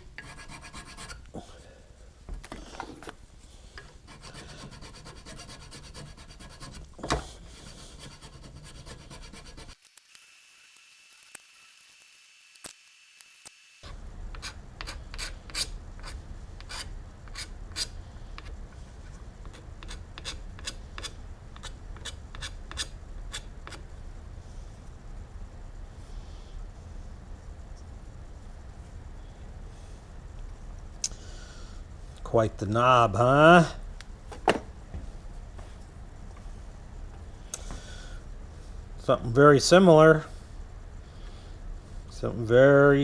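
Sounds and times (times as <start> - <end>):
hand file scraping: 4.1 - 13.6.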